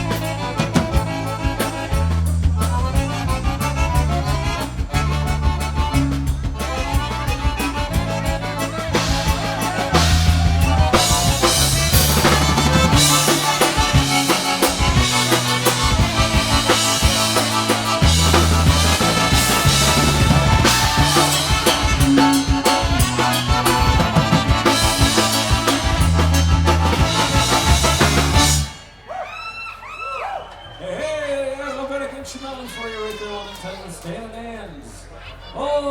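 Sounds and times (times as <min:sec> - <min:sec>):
pulsing bass beat: 0:00.0 - 0:28.7
brass: 0:00.0 - 0:29.0
drum kit: 0:00.0 - 0:29.0
polka band playing: 0:00.0 - 0:29.0.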